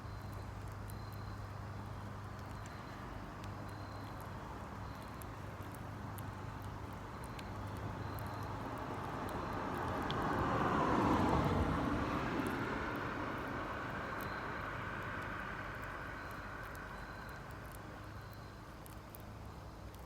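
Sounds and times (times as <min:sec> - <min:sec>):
faint clicks: 0:02.2 - 0:10.3, 0:15.0 - 0:20.0
distant engine passing by: 0:08.4 - 0:16.9.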